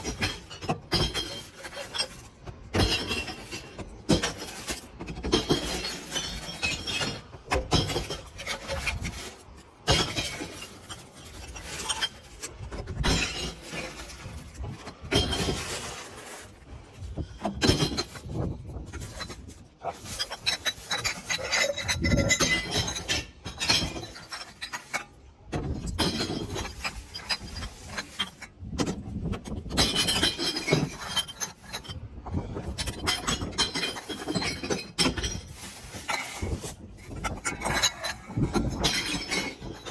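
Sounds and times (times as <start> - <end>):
glass bottles clinking into bin: 5.2 - 9.2, 12.9 - 16.0, 17.2 - 19.3, 19.9 - 25.0, 25.7 - 28.5, 32.6 - 36.7, 37.4 - 39.9.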